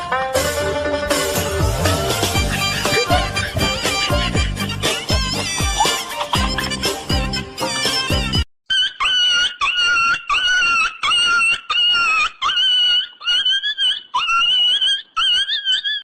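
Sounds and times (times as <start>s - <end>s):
burst of music: 0.0s - 8.4s
high-pitched animal-like squeals: 8.7s - 16.0s.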